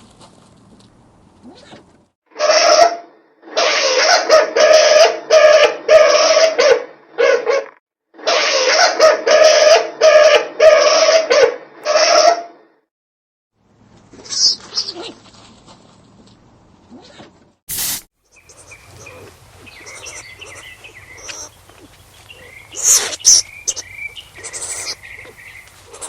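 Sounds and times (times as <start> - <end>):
skunk calling: 18.2 - 26.0.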